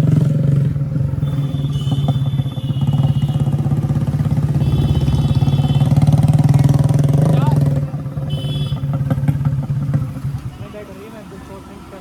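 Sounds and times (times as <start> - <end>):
motorcycle engine running: 0.0 - 10.7.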